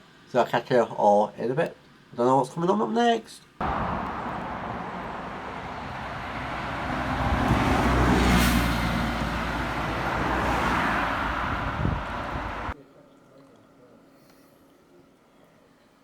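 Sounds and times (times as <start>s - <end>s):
vehicle passing rumble: 3.6s - 12.8s.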